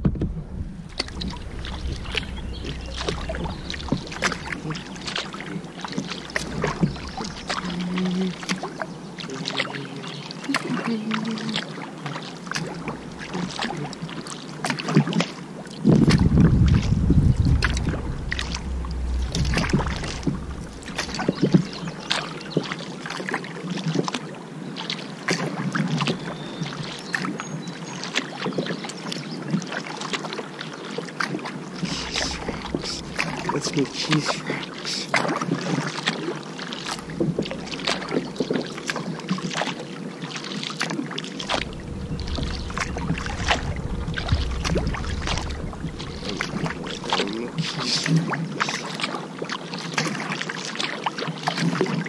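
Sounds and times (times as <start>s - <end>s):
loud low rumble: 0.0s - 8.5s, 12.7s - 14.0s, 15.9s - 22.6s, 31.7s - 34.4s, 36.8s - 39.2s, 41.4s - 48.1s
paddle splashing in water: 0.0s - 52.0s
water dripping: 0.8s - 9.6s, 41.4s - 47.8s.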